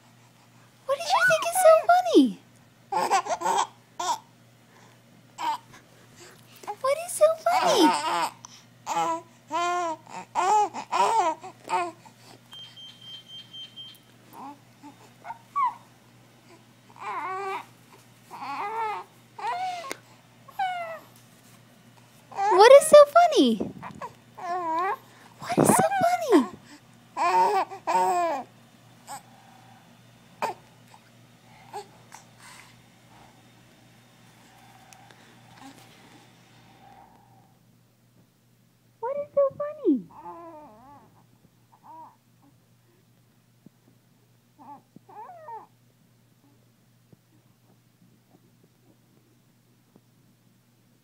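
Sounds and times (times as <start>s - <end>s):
baby vocal sounds: 0.9s - 2.3s, 2.9s - 4.3s, 5.4s - 5.7s, 6.6s - 12.1s, 16.5s - 17.7s, 18.3s - 21.1s, 22.3s - 26.6s, 27.2s - 28.5s, 30.4s - 32.6s
baby laughing: 2.9s - 4.3s.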